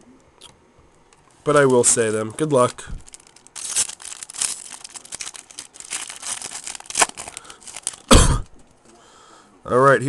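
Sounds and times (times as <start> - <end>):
foil wrapper crinkling and tearing: 1.6 - 8.6.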